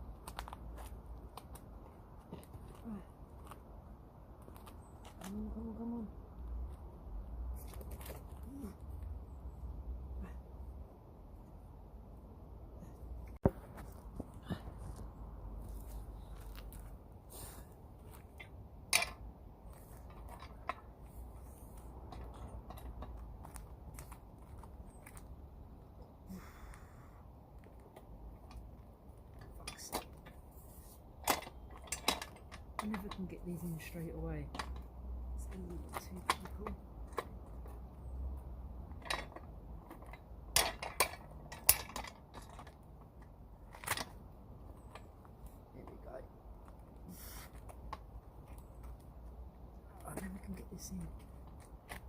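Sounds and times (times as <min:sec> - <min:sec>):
metal parts clicking and knocking: 0:18.4 - 0:19.2, 0:31.2 - 0:33.4, 0:38.9 - 0:44.2.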